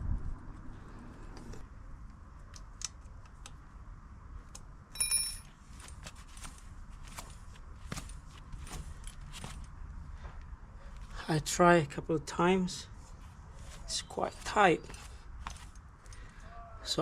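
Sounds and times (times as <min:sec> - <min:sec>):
ringing metallic clink: 0:04.9 - 0:05.5.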